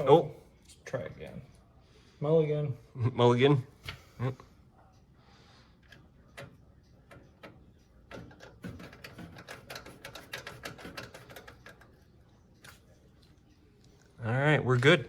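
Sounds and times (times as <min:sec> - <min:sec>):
screwdriver clicking on metal: 0:05.8 - 0:11.9.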